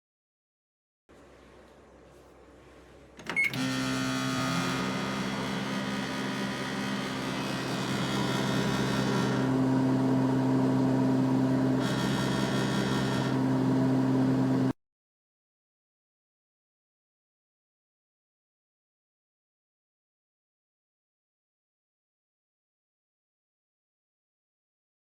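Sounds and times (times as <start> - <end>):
microwave humming: 2.8 - 14.7.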